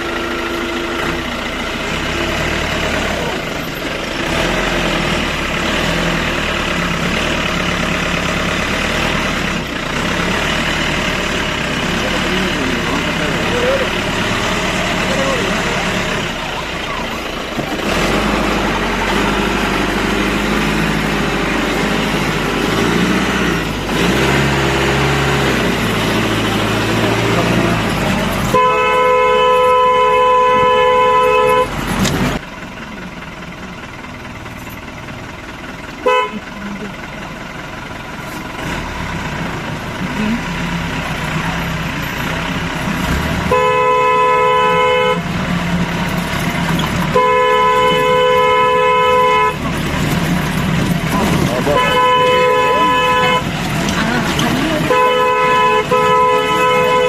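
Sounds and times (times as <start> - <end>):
engine running under load: 0.0 - 57.0
two-tone car horn: 28.4 - 31.8, 36.0 - 36.8, 43.4 - 45.3, 47.0 - 49.9, 51.2 - 57.0.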